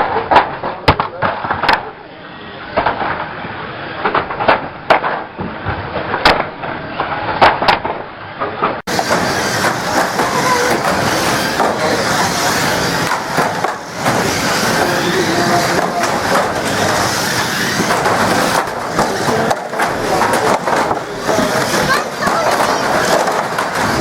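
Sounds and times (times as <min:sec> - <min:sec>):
cars crashing into each other: 0:02.7 - 0:24.0
din of racing engines and tyres: 0:08.9 - 0:24.0.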